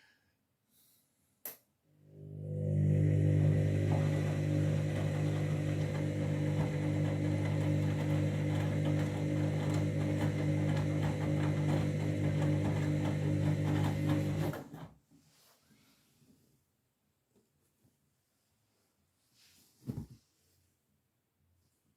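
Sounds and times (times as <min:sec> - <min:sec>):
drain pump humming: 0:02.2 - 0:14.8.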